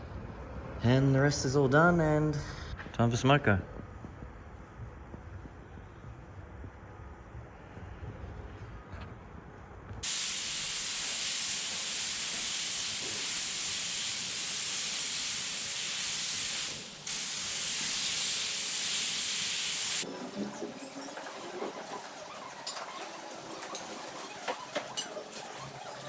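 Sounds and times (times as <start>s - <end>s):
spray gun hissing: 10.0s - 20.0s.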